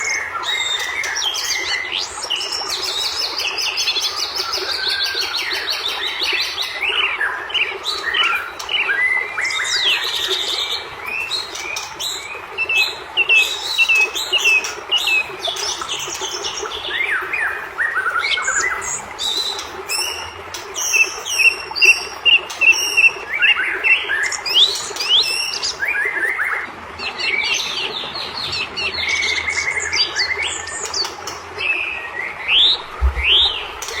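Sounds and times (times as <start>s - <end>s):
sharp ticking bird calls: 7.8s - 17.3s, 18.1s - 31.9s.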